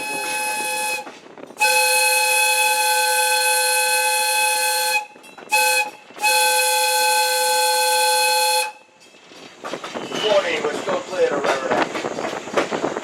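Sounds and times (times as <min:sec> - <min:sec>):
chime steam whistle blowing: 0:00.0 - 0:08.8.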